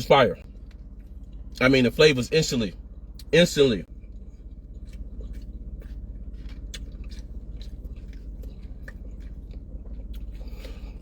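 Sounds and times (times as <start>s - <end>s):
low hum: 0.0s - 11.0s
person chewing: 3.9s - 11.0s.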